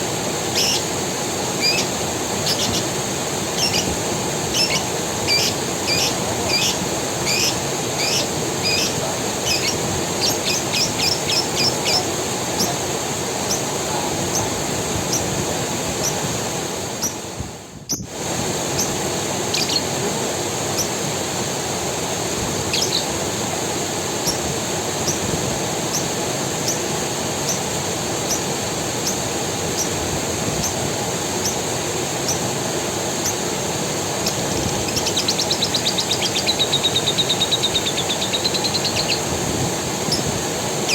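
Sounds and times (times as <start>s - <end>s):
creek water running: 0.0s - 40.9s
bird chirping: 0.5s - 0.9s, 1.6s - 2.9s, 3.6s - 3.9s, 4.5s - 12.8s, 19.5s - 19.9s, 22.7s - 23.1s, 34.2s - 39.3s.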